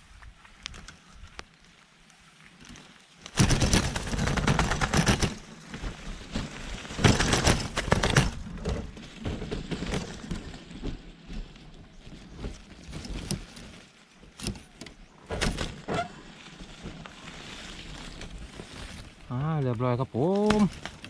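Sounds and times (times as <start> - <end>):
dove flapping wings against cage: 3.4 - 5.4.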